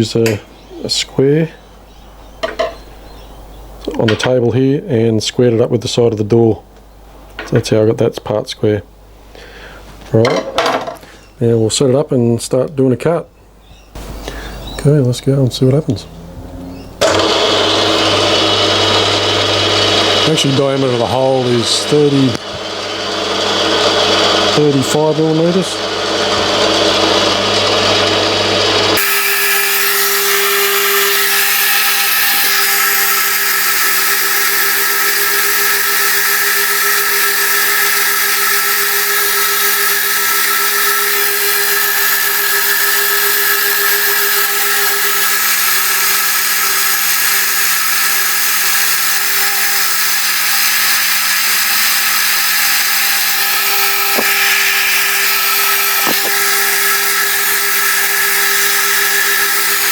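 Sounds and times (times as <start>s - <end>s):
milling machine cutting: 14.0s - 59.9s.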